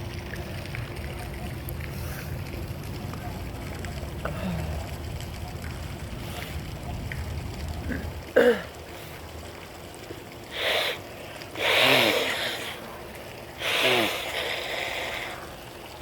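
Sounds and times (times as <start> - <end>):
sharp noisy breath: 10.5 - 11.0, 11.6 - 12.9, 13.6 - 15.5.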